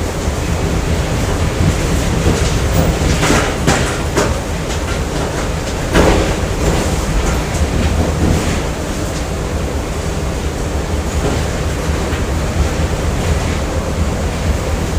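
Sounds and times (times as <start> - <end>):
machinery clanks and clatter: 0.0 - 14.9
machinery low rumble: 0.0 - 14.9.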